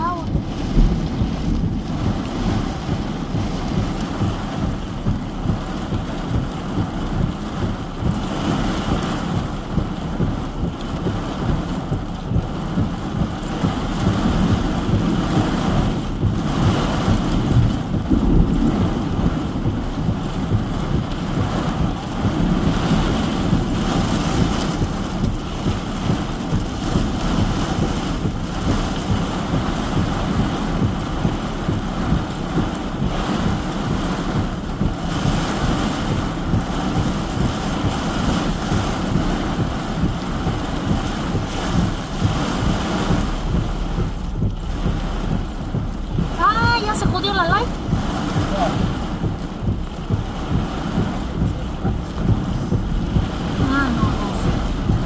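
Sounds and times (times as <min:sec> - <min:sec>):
gusting wind: 0:00.0 - 0:55.0
heavy rain: 0:00.0 - 0:55.0
wind buffeting microphone: 0:00.0 - 0:55.0.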